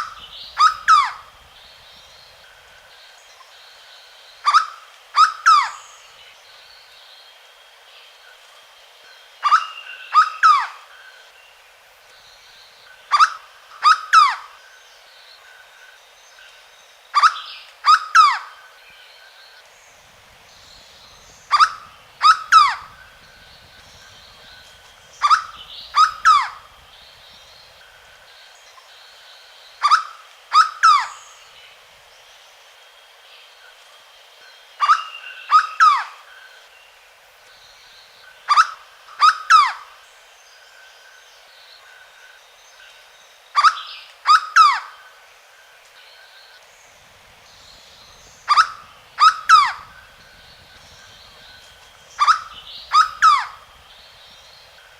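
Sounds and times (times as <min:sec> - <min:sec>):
bird singing ringing notes: 0:18.7 - 0:29.2, 0:40.5 - 0:54.9.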